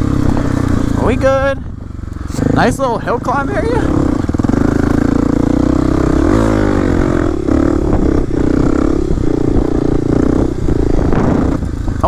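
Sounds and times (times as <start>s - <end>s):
dirt bike engine revving: 0.0s - 12.0s.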